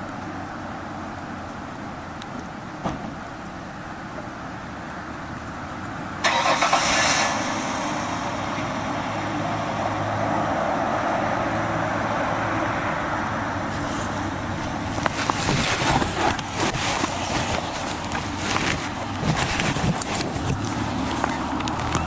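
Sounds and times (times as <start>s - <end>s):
motorcycle starter turning engine over: 6.2s - 7.3s.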